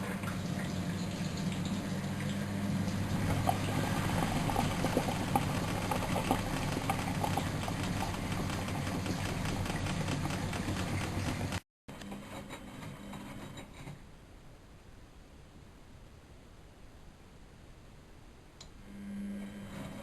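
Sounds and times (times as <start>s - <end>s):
washing machine motor hum: 0.0s - 11.6s.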